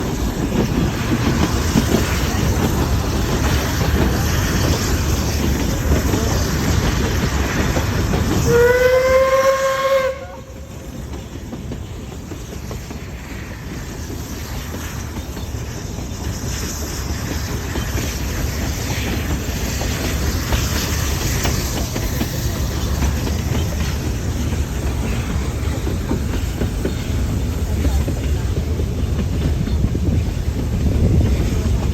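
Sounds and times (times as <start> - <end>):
steam train rumble and clatter: 0.0 - 31.9
steam whistle: 8.3 - 10.7.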